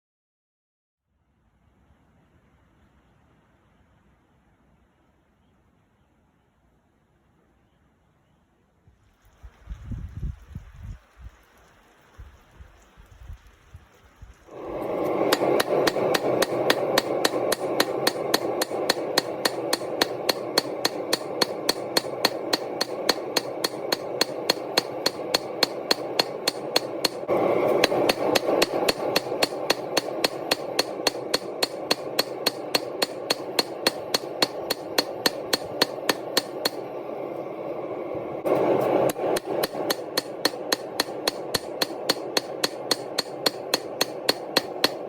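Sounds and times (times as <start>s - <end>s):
steady rushing noise: 14.5s - 45.0s
hammer striking steel: 14.6s - 37.3s, 38.4s - 45.0s.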